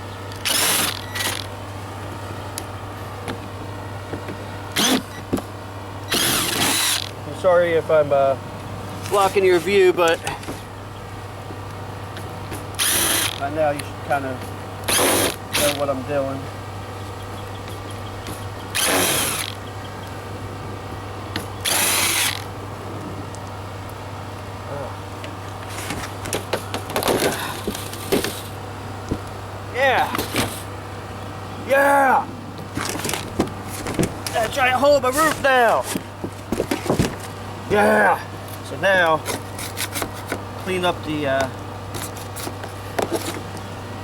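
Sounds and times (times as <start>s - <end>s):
cordless drill running: 0.4s - 1.5s, 4.8s - 5.2s, 6.1s - 7.1s, 12.8s - 13.4s, 14.9s - 15.8s, 18.7s - 19.6s, 21.6s - 22.5s.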